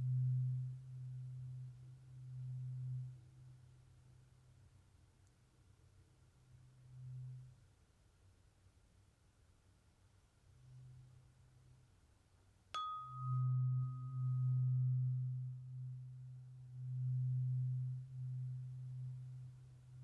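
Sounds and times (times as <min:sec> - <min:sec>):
tuning fork ringing: 0:00.0 - 0:03.2, 0:12.7 - 0:20.0
low steady hum: 0:00.0 - 0:20.0.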